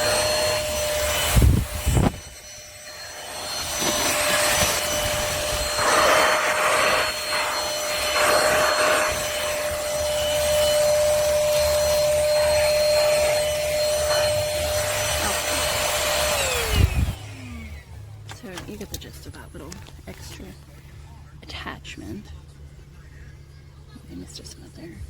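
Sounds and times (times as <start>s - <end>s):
stick vacuum cleaner whining: 0.0s - 20.4s.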